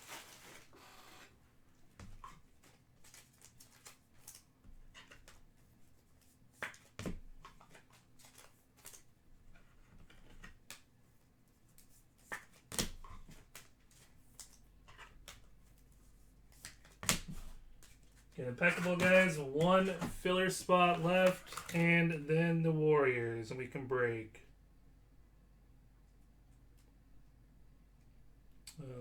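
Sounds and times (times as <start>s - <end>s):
cards and packaging handled: 2.0s - 22.3s.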